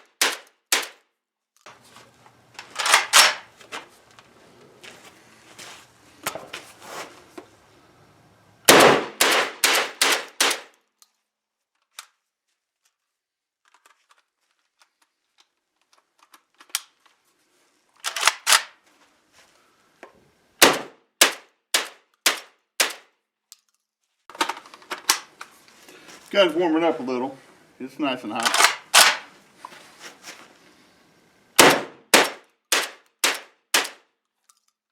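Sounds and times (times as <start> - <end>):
shotgun firing: 8.7 - 10.7, 20.6 - 23.0, 31.6 - 34.0.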